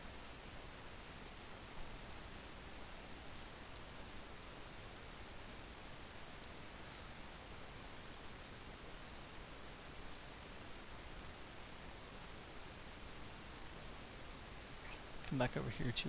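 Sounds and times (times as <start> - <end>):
computer mouse clicks: 3.6 - 3.9, 6.3 - 6.6, 8.0 - 8.3, 10.0 - 10.3.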